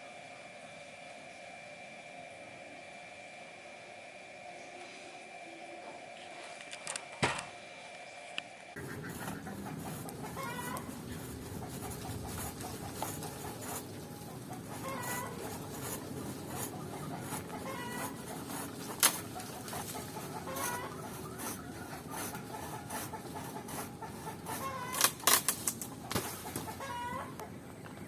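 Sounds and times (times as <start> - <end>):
chickens clucking: 8.8 - 28.0.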